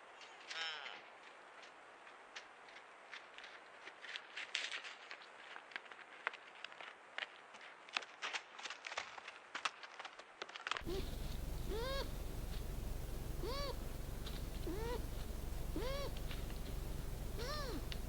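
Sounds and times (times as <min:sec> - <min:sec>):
recorder low hum: 0:10.8 - 0:18.0
rustling and clicks: 0:10.8 - 0:18.0
wild animal calling: 0:10.8 - 0:18.0.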